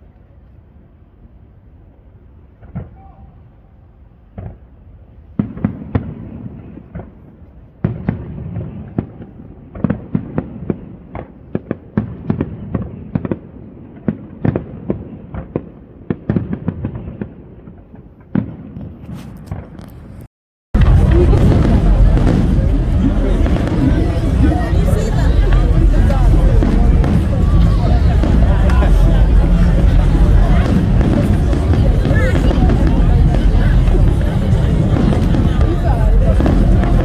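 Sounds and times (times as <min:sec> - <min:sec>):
fireworks bangs and crackling: 0:02.5 - 0:03.0, 0:04.3 - 0:37.0
low rumble: 0:20.8 - 0:37.0.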